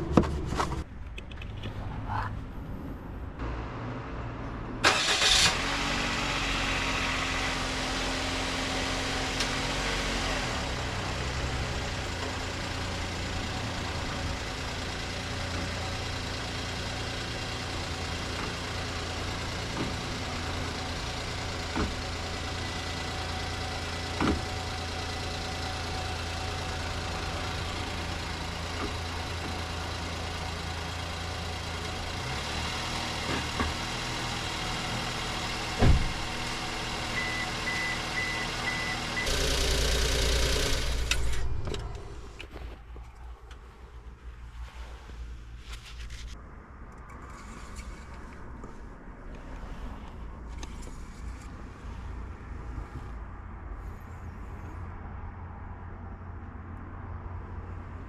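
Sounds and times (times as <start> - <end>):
car engine idling: 6.9 - 43.8.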